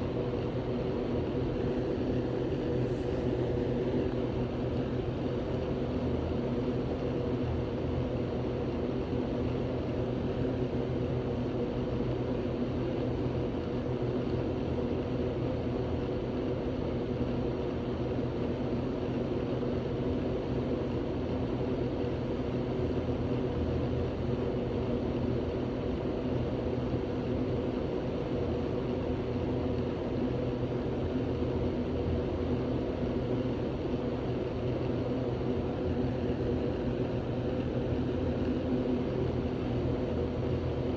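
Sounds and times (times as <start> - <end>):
low mechanical drone: 29.8 - 40.9.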